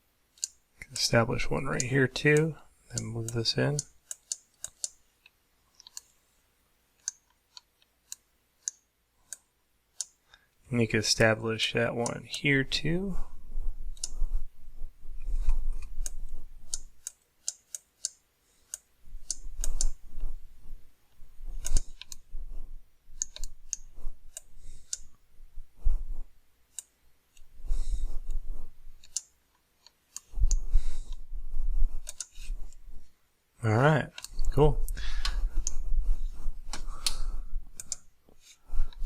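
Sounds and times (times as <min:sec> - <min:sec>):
mouse and keyboard clicking: 0:15.3 - 0:20.0, 0:21.6 - 0:22.2, 0:23.2 - 0:25.1, 0:32.0 - 0:32.5, 0:35.3 - 0:38.0.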